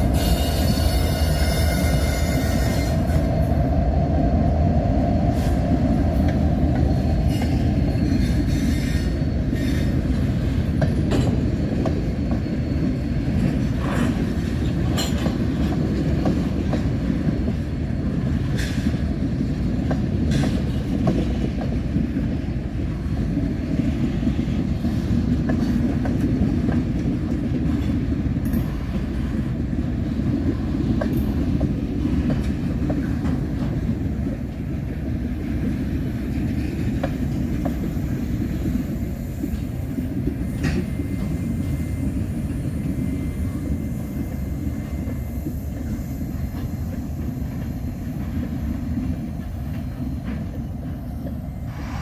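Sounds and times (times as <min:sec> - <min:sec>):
freight train rumbling past: 0:00.0 - 0:52.0
wheels clicking over rail joints: 0:09.7 - 0:17.7.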